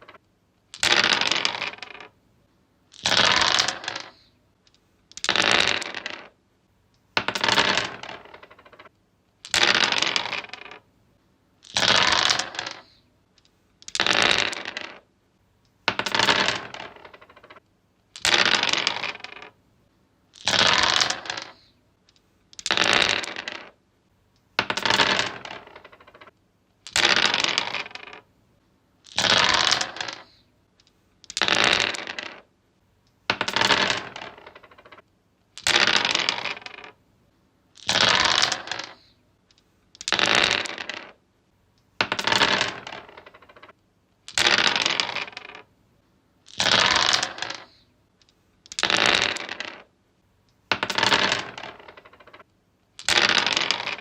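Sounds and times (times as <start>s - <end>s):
dice rattling on wooden surface: 0.0s - 2.2s, 2.9s - 6.4s, 7.1s - 10.9s, 11.6s - 13.0s, 13.8s - 15.1s, 15.8s - 19.6s, 20.3s - 21.7s, 22.5s - 23.8s, 24.5s - 28.3s, 29.0s - 32.5s, 33.2s - 37.0s, 37.8s - 41.2s, 42.0s - 43.7s, 44.3s - 45.7s, 46.4s - 49.9s, 50.6s - 54.0s.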